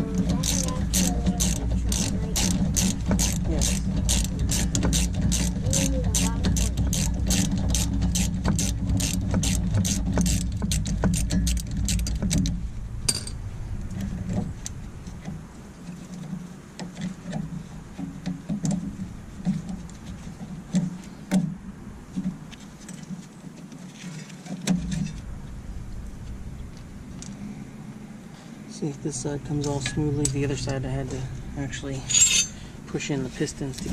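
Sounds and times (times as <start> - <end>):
low rumble: 0.0 - 15.9, 24.8 - 33.0
ratchet wrench clicking: 0.2 - 12.2
metallic clinks of tools: 32.0 - 32.6.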